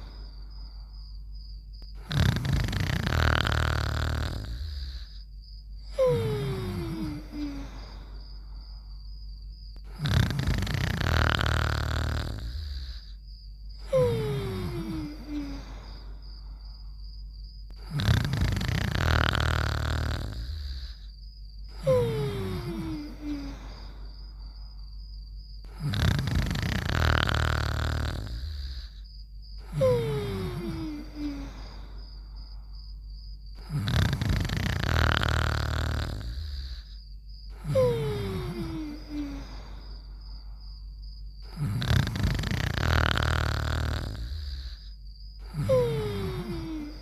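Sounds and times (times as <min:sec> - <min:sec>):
cartoon rasping snore: 0:00.0 - 0:00.2, 0:02.0 - 0:05.2, 0:05.9 - 0:08.1, 0:09.8 - 0:13.2, 0:13.8 - 0:16.2, 0:17.8 - 0:21.1, 0:21.7 - 0:24.1, 0:25.7 - 0:29.0, 0:29.6 - 0:32.0, 0:33.6 - 0:40.0, 0:41.4 - 0:47.0.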